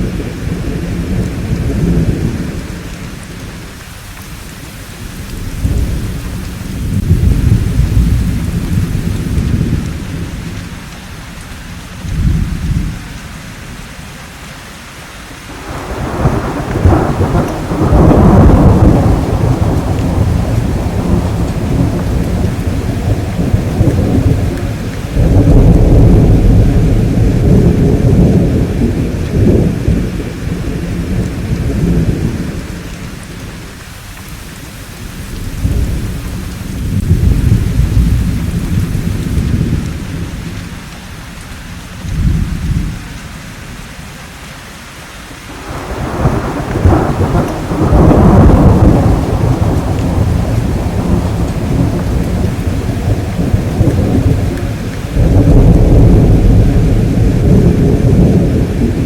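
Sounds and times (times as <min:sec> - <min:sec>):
steady rainfall: 0:00.0 - 0:59.0
rolling thunder: 0:04.9 - 0:10.9, 0:15.5 - 0:41.0, 0:42.0 - 0:43.1, 0:45.5 - 0:59.0.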